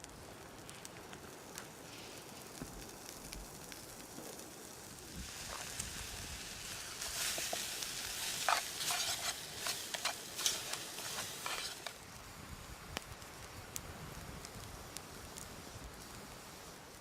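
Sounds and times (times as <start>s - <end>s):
sharp crackles: 0.0s - 17.0s
food sizzling in a pan: 4.3s - 12.7s
scraping in a pan: 6.6s - 12.0s.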